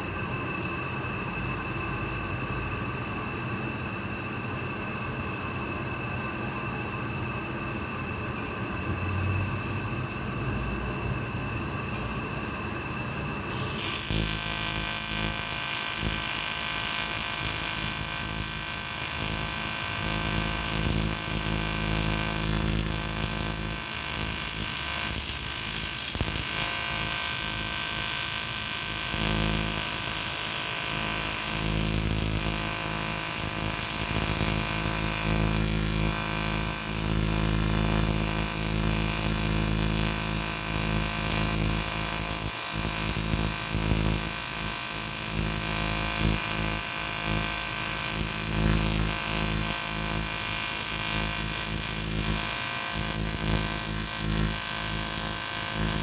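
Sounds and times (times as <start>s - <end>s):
welding arc buzzing: 13.5s - 56.0s.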